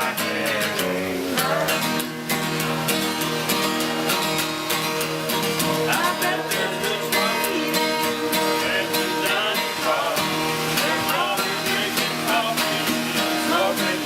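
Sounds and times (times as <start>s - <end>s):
acoustic guitar strumming: 0.0s - 14.0s
bending guitar melody: 0.0s - 14.0s.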